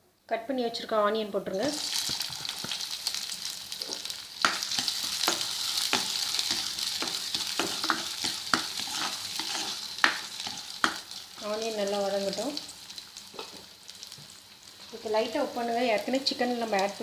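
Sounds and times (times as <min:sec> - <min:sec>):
onions sizzling in oil: 0:01.6 - 0:17.0
utensil scraping pan: 0:03.9 - 0:11.0.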